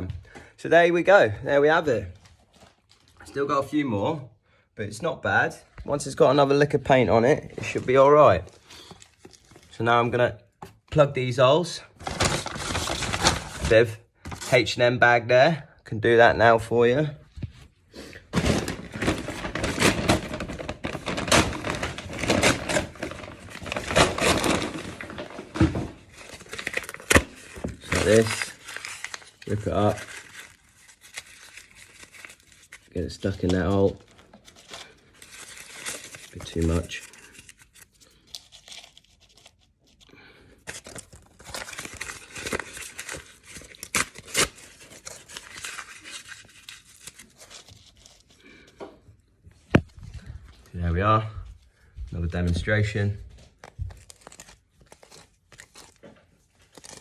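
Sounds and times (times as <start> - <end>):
plastic bag crinkling and rustling: 7.3 - 9.8, 12.0 - 14.6, 18.2 - 48.7, 51.9 - 57.0.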